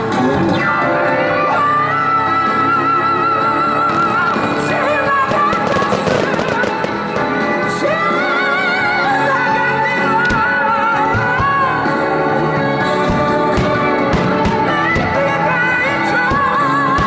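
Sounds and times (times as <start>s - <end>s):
fireworks banging and crackling: 5.1s - 8.3s, 10.3s - 11.8s, 13.0s - 17.0s.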